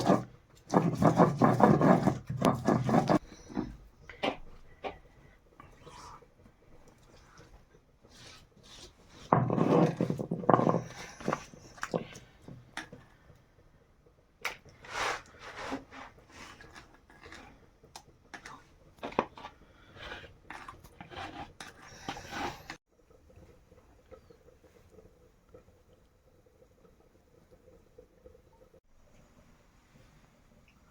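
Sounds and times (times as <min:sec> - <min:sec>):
kitchen knocks and scrapes: 0:00.0 - 0:05.0, 0:09.2 - 0:12.1.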